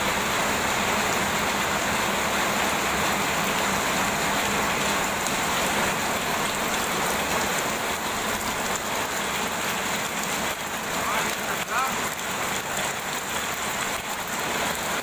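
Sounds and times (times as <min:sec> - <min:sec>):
rain pouring: 0:00.0 - 0:15.0.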